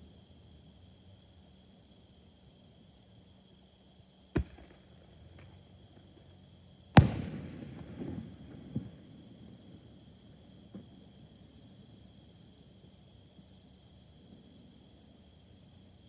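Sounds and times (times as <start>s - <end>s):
fireworks banging: 7.0s - 9.1s.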